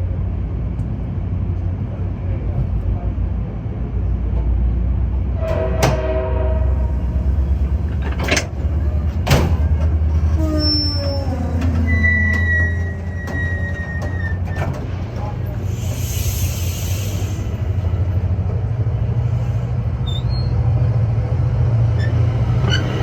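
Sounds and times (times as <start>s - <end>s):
train passing rumble: 0.0s - 23.0s
high squeal: 10.4s - 14.6s, 20.0s - 20.7s, 22.0s - 23.0s.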